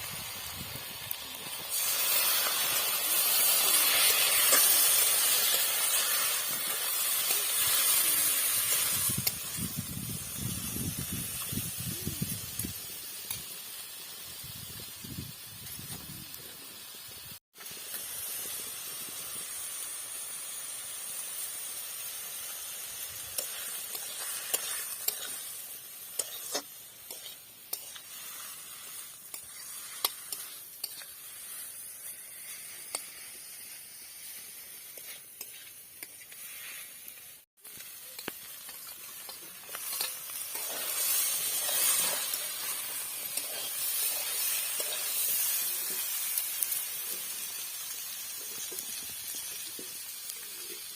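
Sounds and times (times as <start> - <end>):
food sizzling in oil: 0.0 - 50.9
spoon scraping a pan: 23.4 - 33.8, 34.8 - 37.0, 37.7 - 46.0.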